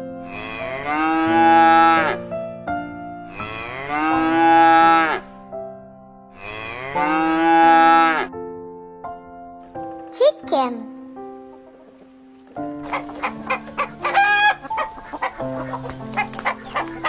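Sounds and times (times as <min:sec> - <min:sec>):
light keyboard music: 0:00.0 - 0:17.0
cow mooing: 0:00.2 - 0:02.2, 0:03.3 - 0:05.3, 0:06.4 - 0:08.3.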